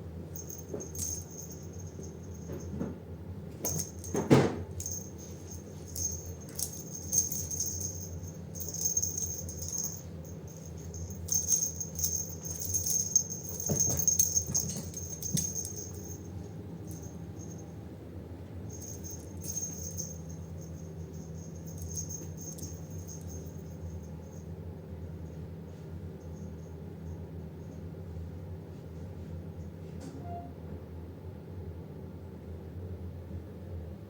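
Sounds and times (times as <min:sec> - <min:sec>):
steady low hum: 0:00.0 - 0:30.0
jingling cat toy shaken: 0:00.4 - 0:02.8, 0:03.6 - 0:17.7, 0:18.7 - 0:24.5.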